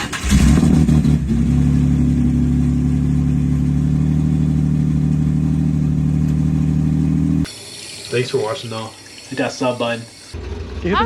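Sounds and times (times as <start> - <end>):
car engine starting and idling: 0.0 - 7.5, 10.4 - 11.0.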